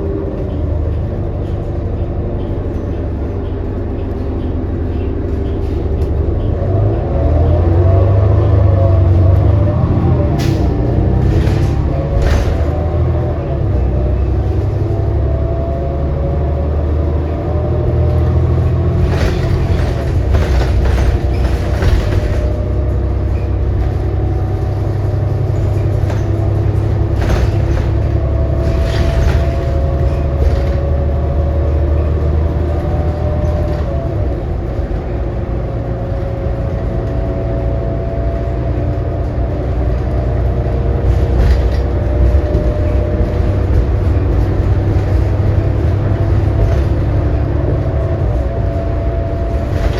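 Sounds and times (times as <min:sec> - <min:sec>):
bus engine rumble and whine: 0:00.0 - 0:49.9
bus rattling: 0:00.0 - 0:49.9.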